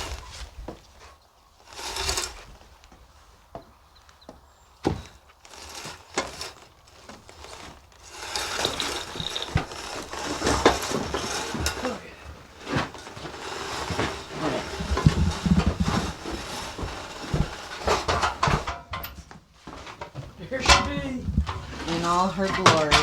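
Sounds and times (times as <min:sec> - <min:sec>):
chain rattling: 0:05.4 - 0:12.0
metal knocks: 0:20.0 - 0:23.0.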